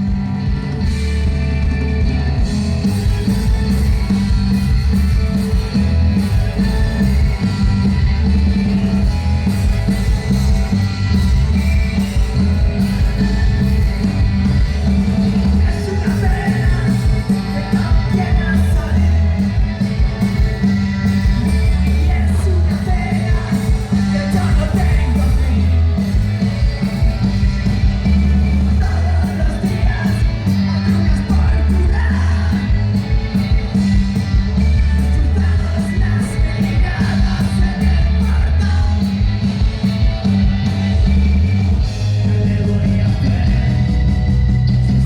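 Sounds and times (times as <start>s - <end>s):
heavy bass: 0.0s - 45.0s
rock band playing: 0.0s - 45.0s
person singing: 13.1s - 26.8s, 28.4s - 39.6s.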